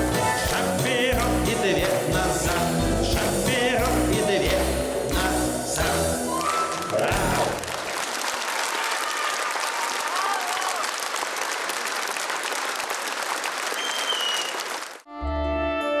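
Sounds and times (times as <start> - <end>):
live band playing dance song: 0.0 - 7.9.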